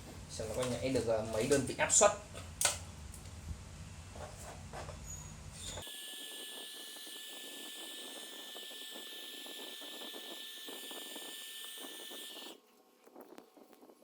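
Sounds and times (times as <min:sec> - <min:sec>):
electric air blower hiss and whine: 0:05.6 - 0:12.6.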